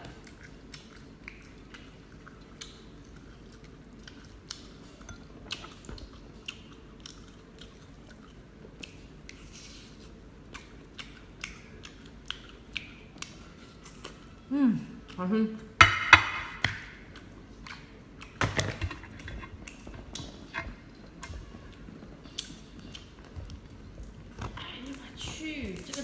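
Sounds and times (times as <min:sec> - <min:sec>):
chewing clicks: 0:00.0 - 0:09.4
faint low hum: 0:00.0 - 0:26.0.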